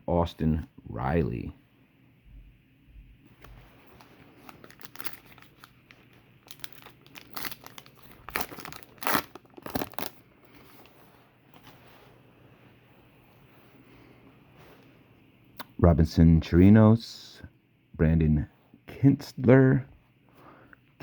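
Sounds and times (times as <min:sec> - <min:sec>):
wrapper tearing and crinkling: 0:03.9 - 0:10.2.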